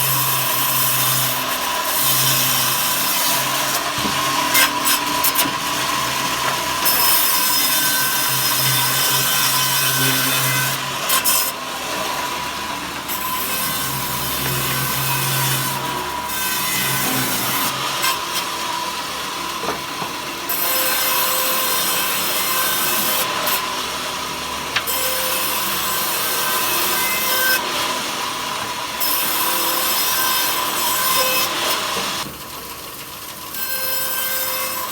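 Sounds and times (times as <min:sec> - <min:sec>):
saw rasping through wood: 0:00.0 - 0:32.3.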